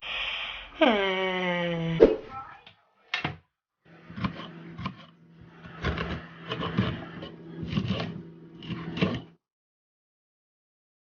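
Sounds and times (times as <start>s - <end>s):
coffee machine humming: 3.9s - 9.3s.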